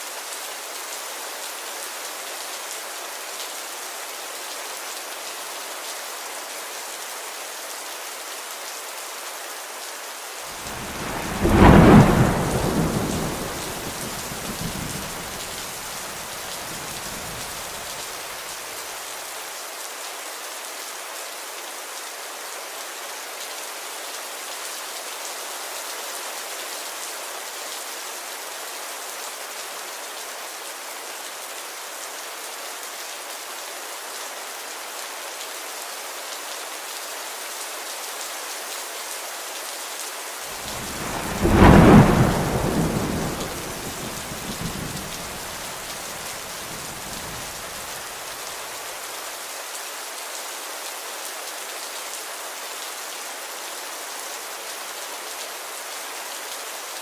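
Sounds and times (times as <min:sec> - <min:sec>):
rain hiss: 0:00.0 - 0:57.0
thunderclap rumbling: 0:10.6 - 0:16.0, 0:16.6 - 0:17.8, 0:40.6 - 0:47.9.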